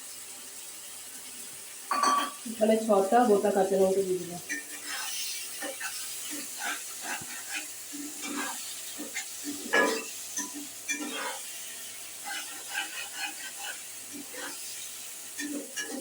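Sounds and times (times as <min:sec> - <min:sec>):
curry sizzling in oil: 0:00.0 - 0:16.0
spatula scraping and knocking pan: 0:04.5 - 0:16.0.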